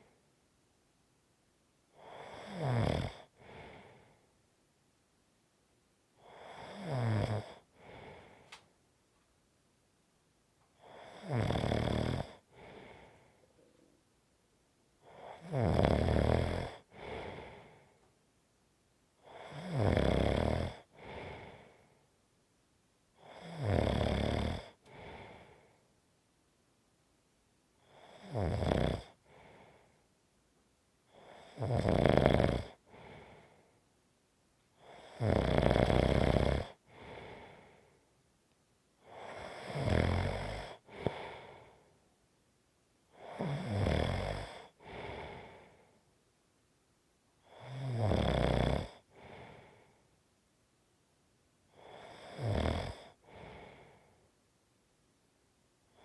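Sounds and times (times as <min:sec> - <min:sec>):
person snoring: 0:02.0 - 0:04.0, 0:06.2 - 0:08.4, 0:10.8 - 0:13.3, 0:15.0 - 0:17.8, 0:19.2 - 0:21.8, 0:23.2 - 0:25.6, 0:27.8 - 0:29.8, 0:31.1 - 0:33.5, 0:34.8 - 0:37.8, 0:39.0 - 0:41.8, 0:43.2 - 0:45.8, 0:47.4 - 0:49.8, 0:51.7 - 0:54.0.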